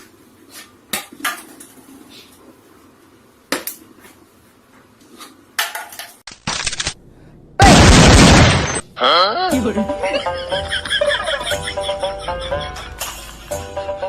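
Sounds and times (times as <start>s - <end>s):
burst of noise: 7.6s - 9.0s.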